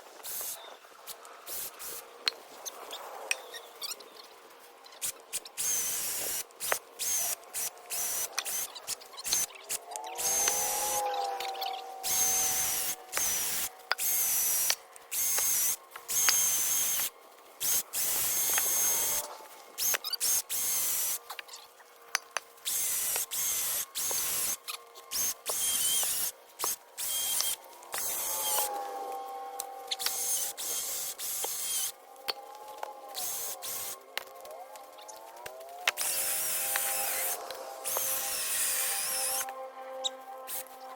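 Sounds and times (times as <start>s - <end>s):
chainsaw cutting tree trunks: 5.0s - 21.2s, 22.6s - 32.0s, 35.8s - 39.5s.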